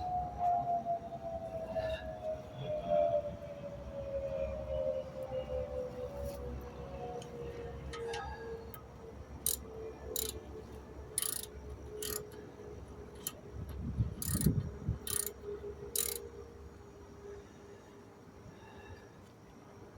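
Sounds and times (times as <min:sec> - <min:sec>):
sharp metallic clicks: 0:08.8 - 0:10.5, 0:11.2 - 0:12.4, 0:13.1 - 0:13.4, 0:14.2 - 0:15.4, 0:16.0 - 0:16.2.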